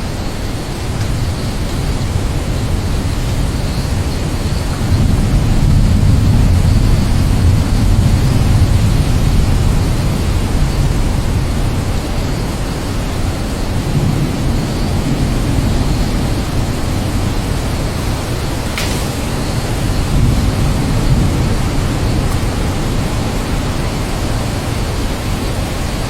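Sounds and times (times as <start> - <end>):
deep rumble: 0.0 - 24.8
steady rain hiss: 0.0 - 26.0.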